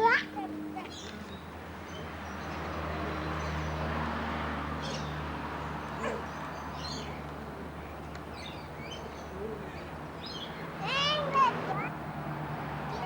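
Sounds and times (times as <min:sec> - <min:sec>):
birds chirping: 0:05.8 - 0:12.0.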